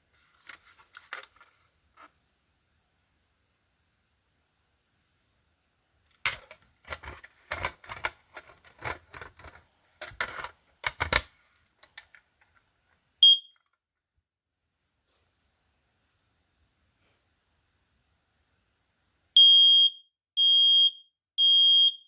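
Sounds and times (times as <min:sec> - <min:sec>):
clicking and rattling of handled device: 0:06.2 - 0:12.2
smoke alarm chirp: 0:13.2 - 0:13.6, 0:19.4 - 0:22.0.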